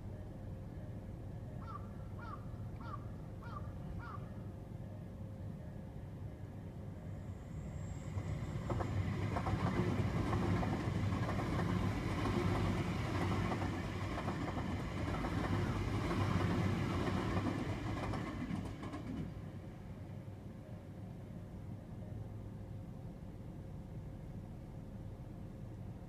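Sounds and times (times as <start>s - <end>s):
train wheels rumbling on rails: 7.6s - 20.0s.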